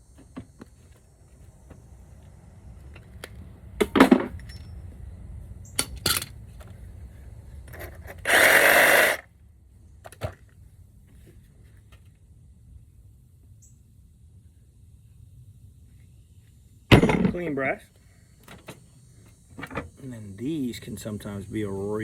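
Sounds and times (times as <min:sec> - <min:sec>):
sharp knocks: 0:16.9 - 0:17.5.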